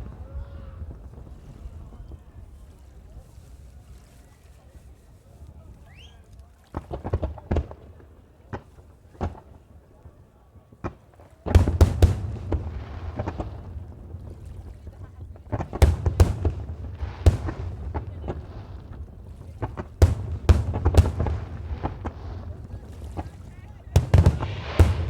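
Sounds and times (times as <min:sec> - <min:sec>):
fireworks bangs: 0:10.9 - 0:25.0
shell bursts with crackling: 0:24.0 - 0:25.0.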